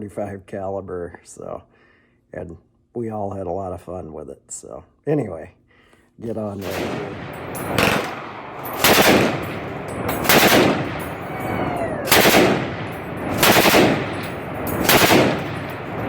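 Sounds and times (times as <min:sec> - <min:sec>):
machine gun bursts: 0:06.6 - 0:16.0.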